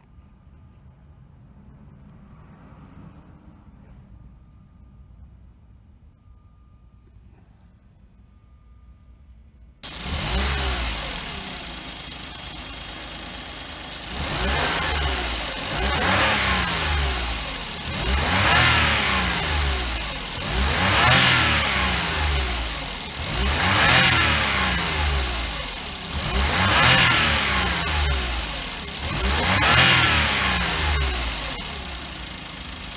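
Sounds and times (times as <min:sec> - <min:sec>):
car engine revving: 0:09.8 - 0:32.9
turbocharger blades striking housing: 0:09.8 - 0:32.9.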